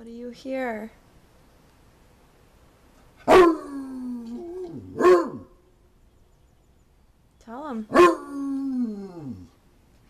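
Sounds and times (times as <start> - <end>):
dog barking: 3.2 - 3.8, 4.9 - 5.6, 7.9 - 8.4.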